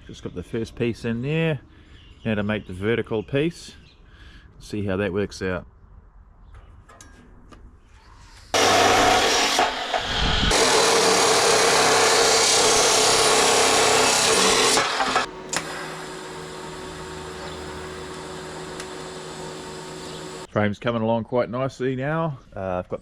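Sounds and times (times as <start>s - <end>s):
power tool grinding steel: 8.6s - 20.5s.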